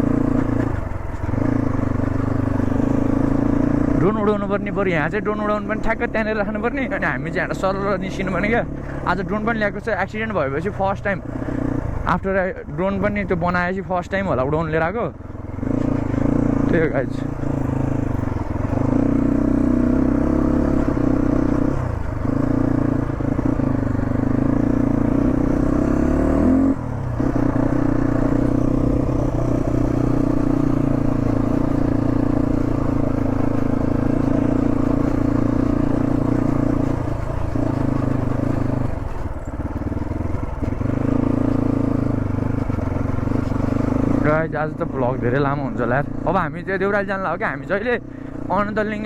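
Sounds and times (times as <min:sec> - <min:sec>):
motorcycle engine revving: 0:00.0 - 0:49.0.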